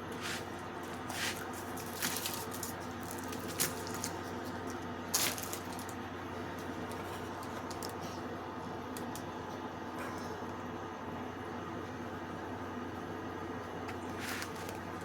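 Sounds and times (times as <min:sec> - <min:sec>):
steady low hum: 0:00.0 - 0:15.0
crackling handling noise: 0:00.1 - 0:09.6, 0:13.8 - 0:15.0.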